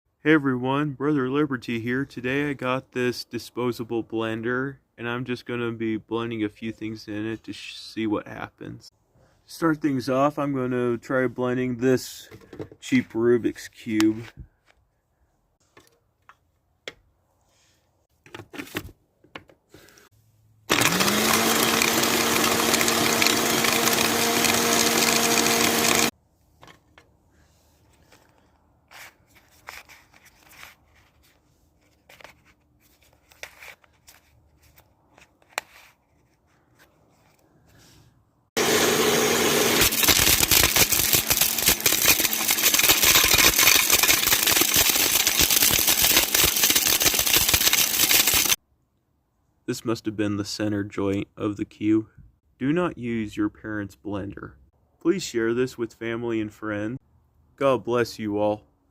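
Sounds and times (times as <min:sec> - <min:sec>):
blender motor running: 0:20.7 - 0:26.1, 0:38.6 - 0:48.6
plastic pieces clattering in jar: 0:39.8 - 0:48.6.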